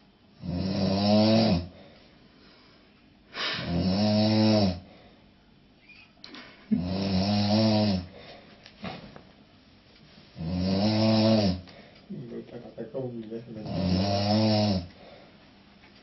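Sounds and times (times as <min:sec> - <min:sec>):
man snoring loudly: 0:00.4 - 0:01.8, 0:03.6 - 0:04.9, 0:06.7 - 0:08.2, 0:10.4 - 0:11.6, 0:13.6 - 0:14.9.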